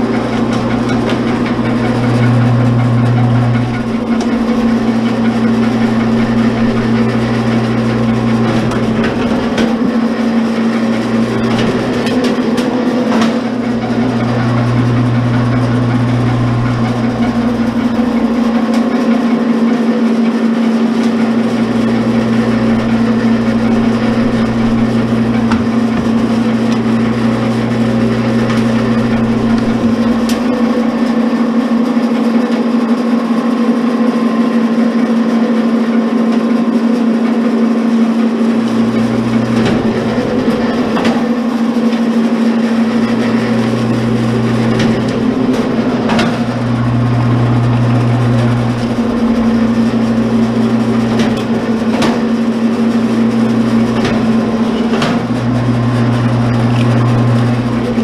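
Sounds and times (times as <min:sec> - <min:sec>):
deeper machine hum: 0:00.0 - 0:58.0
machine steady pitched hum: 0:00.0 - 0:58.0.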